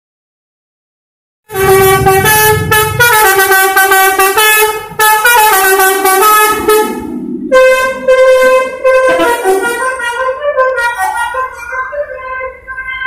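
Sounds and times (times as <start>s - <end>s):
musical air horn tune: 1.5s - 13.0s.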